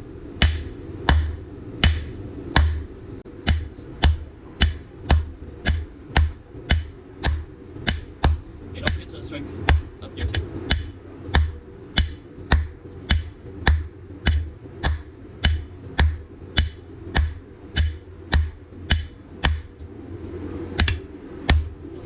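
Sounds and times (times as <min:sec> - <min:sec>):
steady hum: 0:00.0 - 0:22.0
hammer striking steel on anvil: 0:00.4 - 0:02.8, 0:03.4 - 0:09.0.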